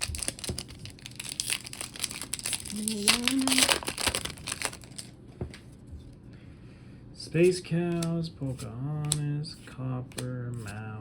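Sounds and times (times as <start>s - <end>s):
foil wrapper crinkling: 0.0s - 5.1s.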